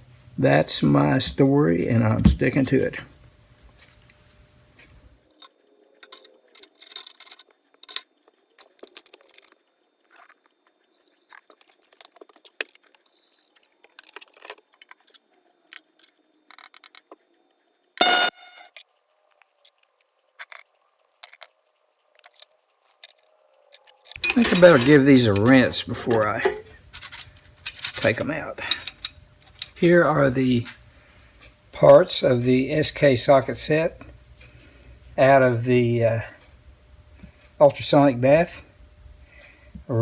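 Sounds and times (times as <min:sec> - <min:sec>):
metal tools clinking: 0:05.3 - 0:08.1, 0:24.0 - 0:30.0
short electronic beep: 0:18.0 - 0:18.8.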